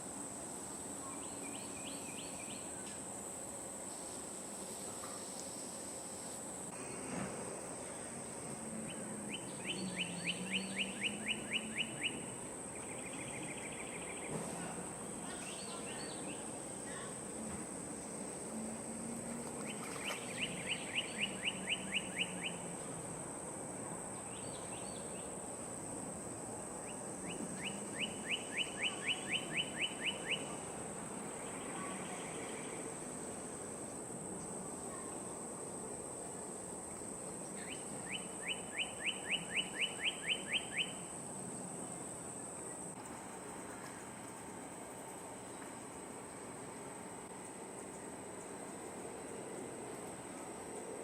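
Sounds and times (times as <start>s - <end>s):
songbird singing: 0.8s - 3.0s, 8.8s - 17.4s, 19.5s - 23.0s, 24.1s - 25.4s, 26.6s - 35.4s, 37.0s - 43.0s.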